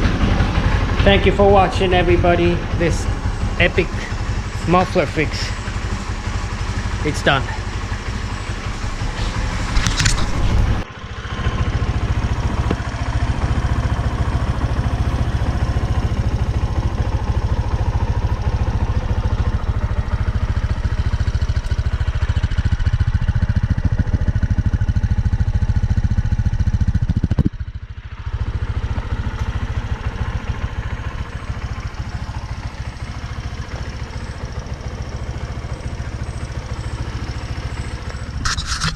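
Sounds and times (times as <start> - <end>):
scooter engine running: 0.0 - 38.9.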